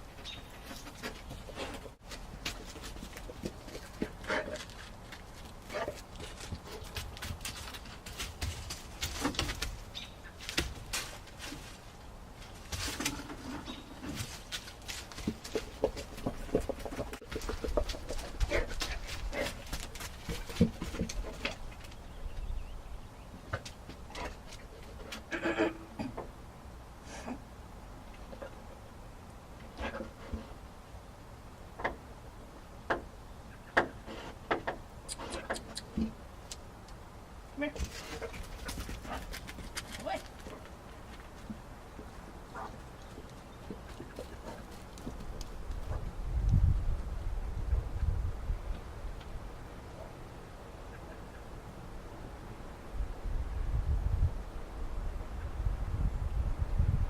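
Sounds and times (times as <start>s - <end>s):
rustling and crackling: 0.0s - 22.5s, 37.6s - 47.1s
sharp clicks and knocks: 31.8s - 32.0s, 33.8s - 37.0s
wind rumble on microphone: 45.4s - 49.5s, 52.8s - 57.0s.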